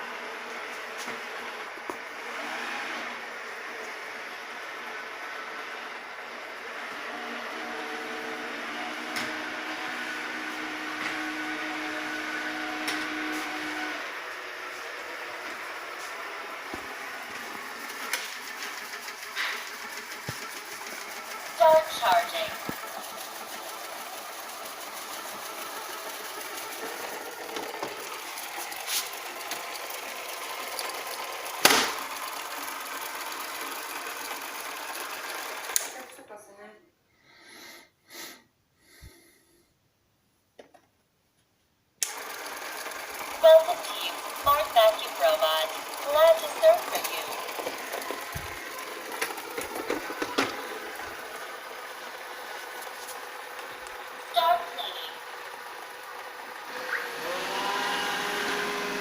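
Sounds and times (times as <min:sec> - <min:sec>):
robot vacuum motor whir: 0:06.7 - 0:35.9, 0:42.0 - 0:54.3, 0:55.2 - 0:59.0.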